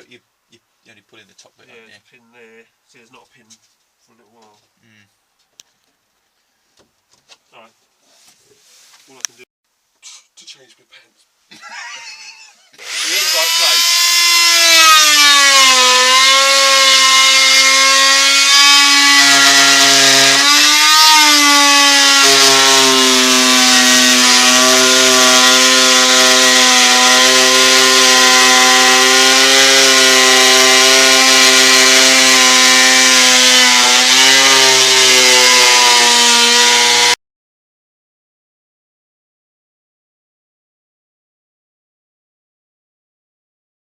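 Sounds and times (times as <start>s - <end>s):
power tool cutting wood: 12.8s - 37.2s.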